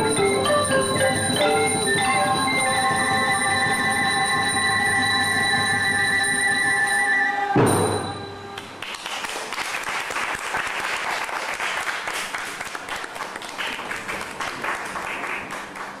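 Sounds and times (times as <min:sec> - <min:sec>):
dance music note ringing: 0:00.0 - 0:08.8
audience applauding: 0:08.6 - 0:16.0.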